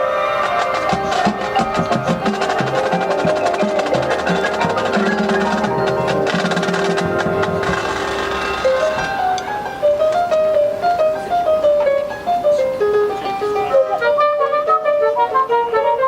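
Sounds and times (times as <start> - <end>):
marching band playing: 0.0 - 10.8
drum hits: 0.4 - 10.4
sharp wooden clicks: 0.5 - 10.4.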